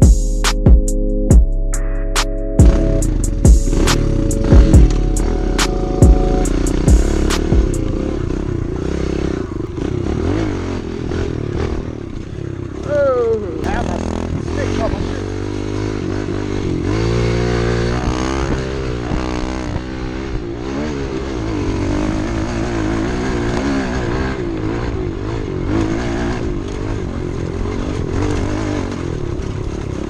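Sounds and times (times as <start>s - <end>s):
pit bike engine revving: 0.0s - 30.0s.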